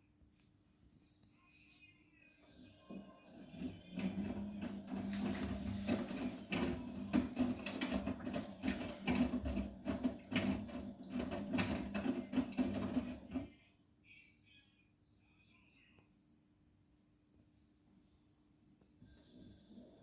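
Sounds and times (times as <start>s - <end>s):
washing machine motor hum: 2.4s - 13.6s
laundry knocking and sloshing: 2.9s - 13.5s.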